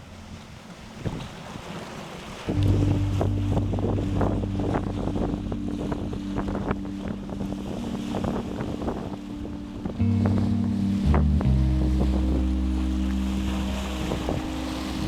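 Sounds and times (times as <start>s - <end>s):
sea waves splashing at shore: 0.0s - 6.4s, 12.7s - 15.0s
wind buffeting microphone: 2.3s - 15.0s
sustained low musical notes: 2.5s - 15.0s.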